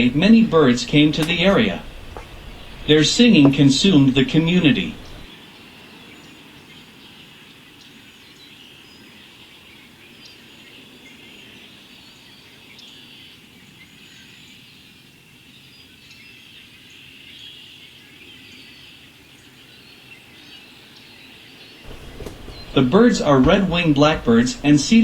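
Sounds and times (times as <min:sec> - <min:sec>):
flock of birds chattering: 0:00.0 - 0:05.3, 0:21.9 - 0:25.0
thin high bird calls: 0:00.0 - 0:05.3, 0:21.9 - 0:25.0.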